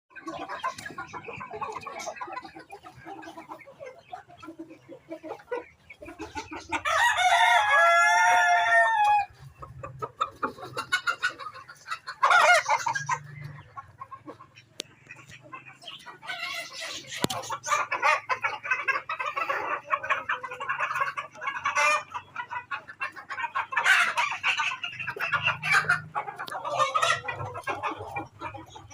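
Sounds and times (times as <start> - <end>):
chickens clucking: 0.1 - 28.9
rooster crowing: 6.9 - 9.3.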